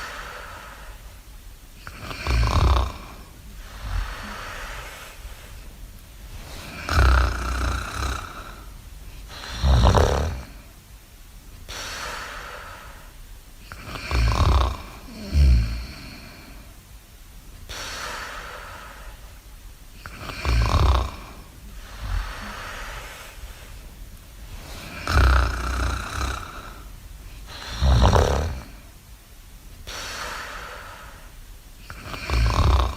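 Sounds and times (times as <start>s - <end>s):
breathy hiss of out-breath: 0.0s - 10.9s, 11.6s - 17.0s, 17.6s - 29.1s, 29.8s - 32.9s
low rattly snores: 1.8s - 5.2s, 6.3s - 10.7s, 13.7s - 16.7s, 20.0s - 23.6s, 24.6s - 28.9s, 31.9s - 32.9s.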